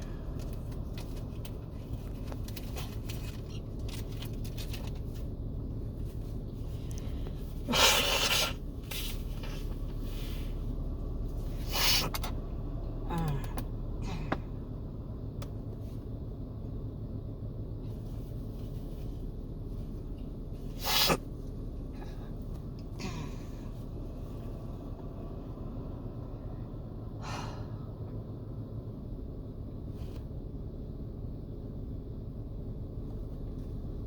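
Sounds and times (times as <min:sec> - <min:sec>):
person sniffling: 0:07.7 - 0:08.6, 0:11.6 - 0:12.2, 0:20.8 - 0:21.2.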